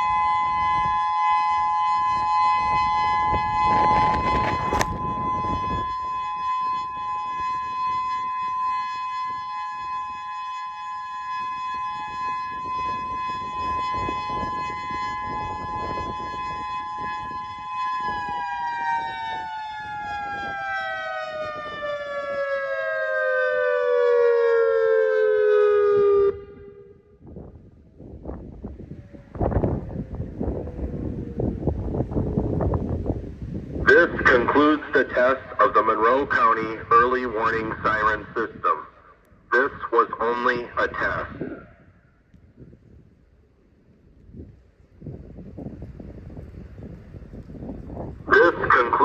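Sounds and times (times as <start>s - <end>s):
siren two-note chord: 0.0s - 27.2s.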